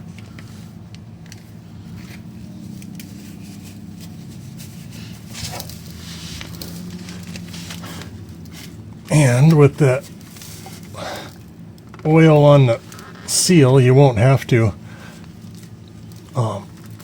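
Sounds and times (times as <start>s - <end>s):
low hum: 0.0s - 17.0s
oil filter scraping: 1.7s - 13.3s.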